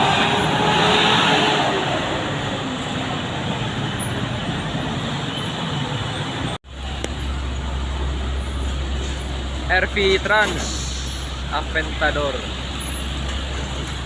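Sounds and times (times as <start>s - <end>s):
heavy vehicle passing: 0.0s - 14.0s
low traffic rumble: 0.0s - 14.0s.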